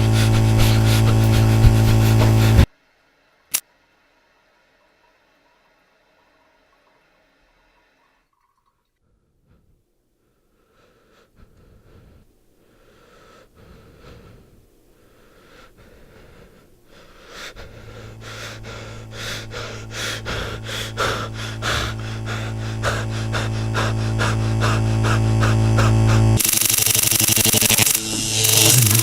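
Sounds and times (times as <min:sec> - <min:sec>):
low electrical hum: 0:00.0 - 0:29.0
faint breath-like sounds: 0:09.0 - 0:26.7
fast crackling clicks: 0:26.4 - 0:29.0
scattered clicks: 0:26.4 - 0:29.0.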